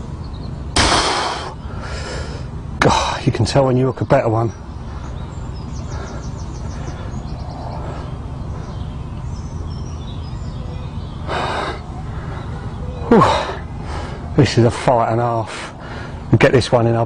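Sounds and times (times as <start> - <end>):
outdoor background rumble: 0.0 - 17.0.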